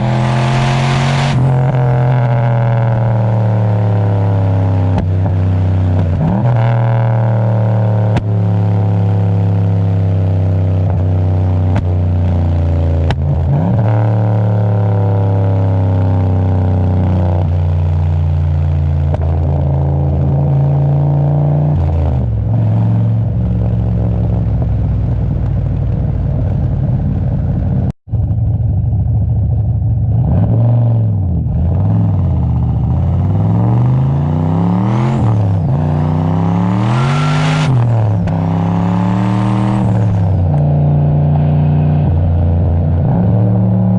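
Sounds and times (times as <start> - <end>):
car engine revving: 0.0 - 15.8, 30.0 - 43.9.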